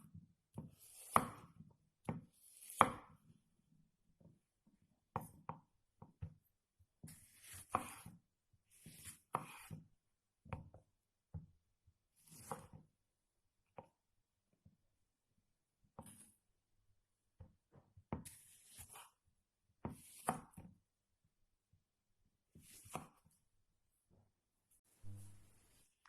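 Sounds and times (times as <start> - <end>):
knife cutting on cutting board: 0.7 - 1.5, 2.4 - 3.1, 7.1 - 9.8, 12.2 - 12.8, 16.0 - 16.4, 18.2 - 19.2, 19.9 - 20.7, 22.5 - 23.3.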